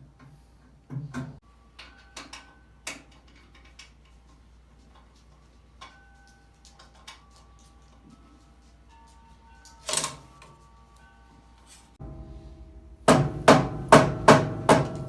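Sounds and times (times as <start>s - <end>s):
metal parts clinking and knocking: 1.8s - 4.2s, 9.6s - 10.6s.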